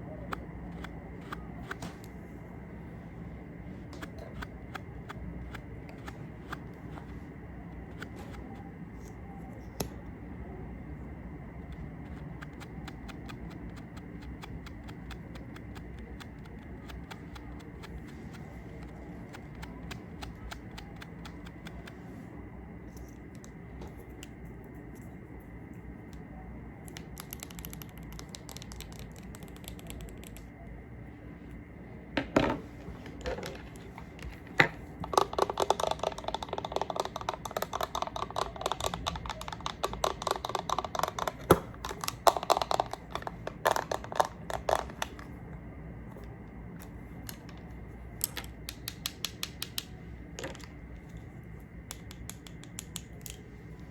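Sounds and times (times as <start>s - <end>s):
rapid tapping: 35.0s - 44.8s.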